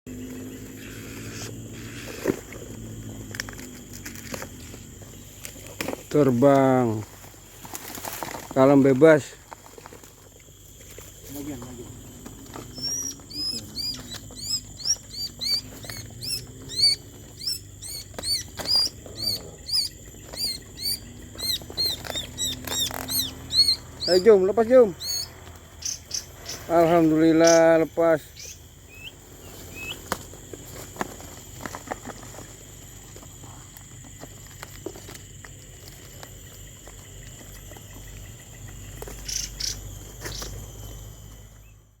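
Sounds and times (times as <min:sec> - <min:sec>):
small birds chirping: 0:00.1 - 0:03.8, 0:10.2 - 0:30.7, 0:36.0 - 0:40.6
insects trilling: 0:00.1 - 0:42.0.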